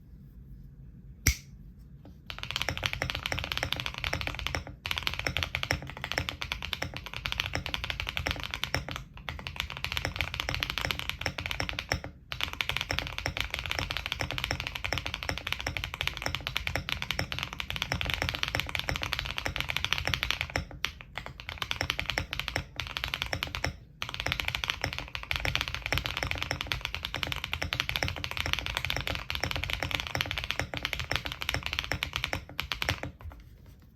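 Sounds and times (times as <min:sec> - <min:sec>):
sharp click: 0:01.2 - 0:01.6
typing on mechanical keyboard: 0:02.3 - 0:33.4.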